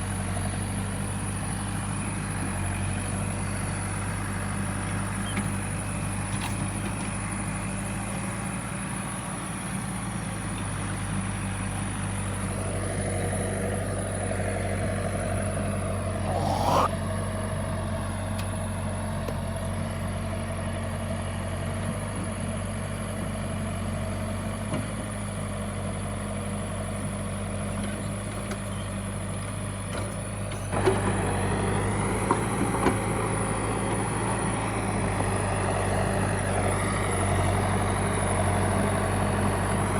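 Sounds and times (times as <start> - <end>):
backhoe diesel engine running: 0.0 - 16.4, 17.3 - 39.9
rising whine: 16.2 - 17.0.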